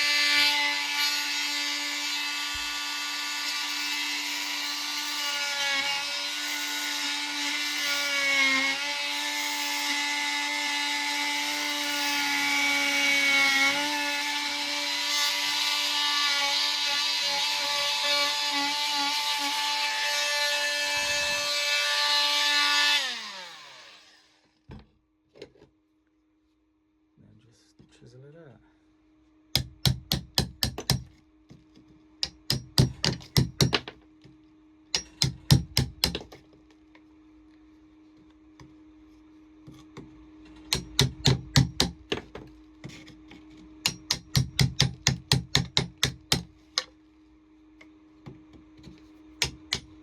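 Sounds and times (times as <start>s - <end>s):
oscillating multi-tool motor whine: 0.0s - 24.5s.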